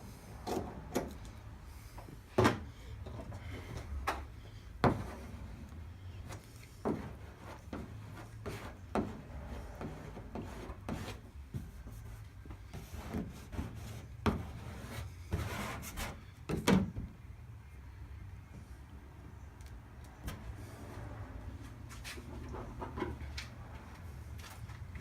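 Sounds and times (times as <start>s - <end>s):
scraping on vinyl decal: 4.8s - 16.3s.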